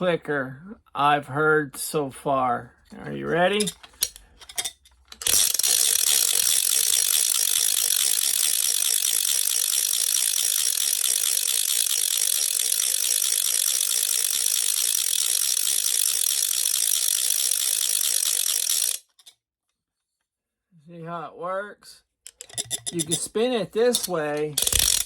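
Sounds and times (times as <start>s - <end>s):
plastic fidget clicker rattling: 3.5s - 19.3s, 22.3s - 25.0s.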